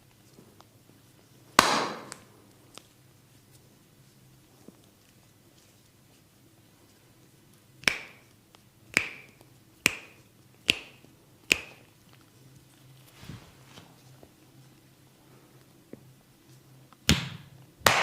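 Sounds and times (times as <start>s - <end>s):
fingers snapping: 7.8s - 8.3s, 8.9s - 11.9s.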